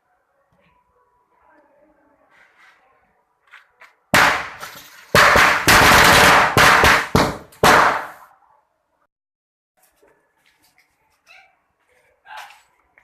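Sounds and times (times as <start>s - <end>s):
firecrackers banging: 4.1s - 8.3s.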